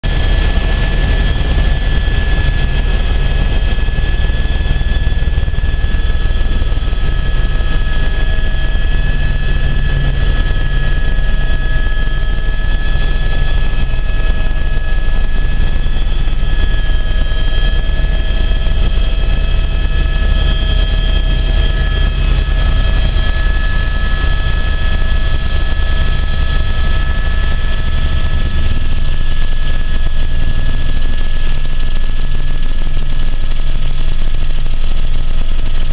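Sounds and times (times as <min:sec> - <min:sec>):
helicopter rotor drone: 0:00.0 - 0:35.9
high-pitched whines: 0:00.1 - 0:32.5.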